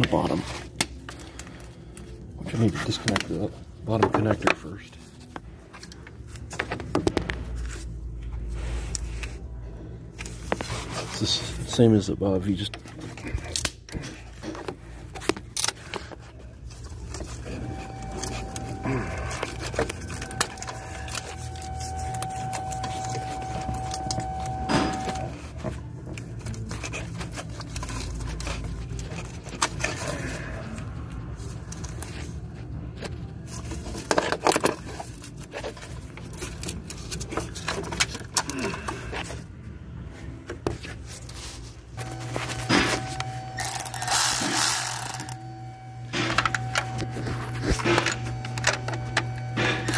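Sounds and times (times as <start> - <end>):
steady low hum: 41.8 - 49.9
hand tools clinking and scraping: 42.0 - 45.4, 46.1 - 49.9.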